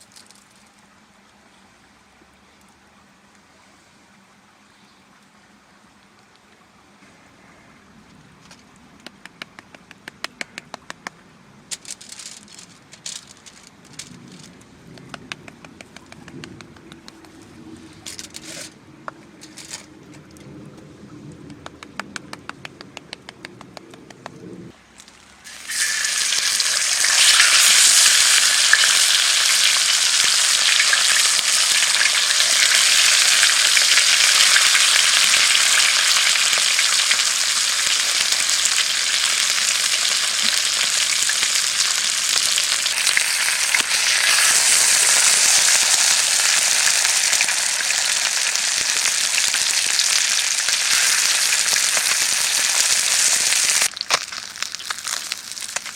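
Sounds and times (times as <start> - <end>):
food sizzling in hot oil: 25.4 - 55.9.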